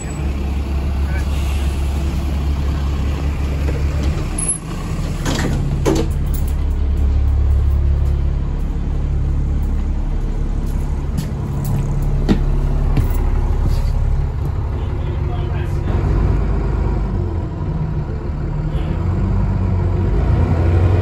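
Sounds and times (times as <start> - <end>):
bus engine drone: 0.0 - 21.0
knocks and rattles: 5.2 - 8.0.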